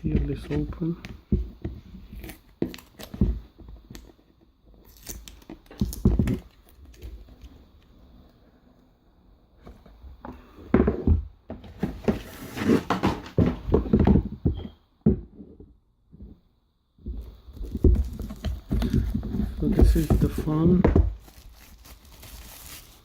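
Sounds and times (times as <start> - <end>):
cardboard packaging rustling: 11.7 - 14.5, 17.5 - 23.0.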